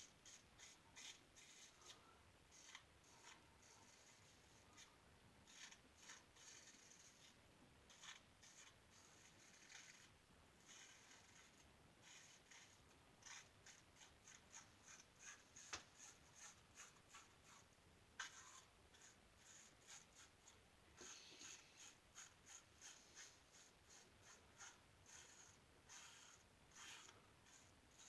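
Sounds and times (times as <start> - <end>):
razor scraping through stubble: 5.5 - 10.1.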